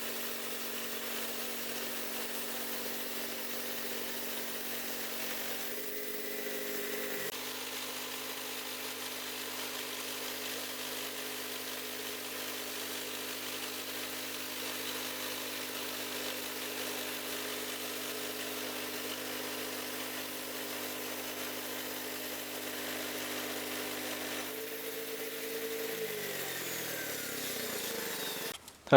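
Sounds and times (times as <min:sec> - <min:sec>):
saw blade hissing through log: 0:00.0 - 0:14.2, 0:16.3 - 0:28.6
sawmill engine running: 0:00.0 - 0:28.6.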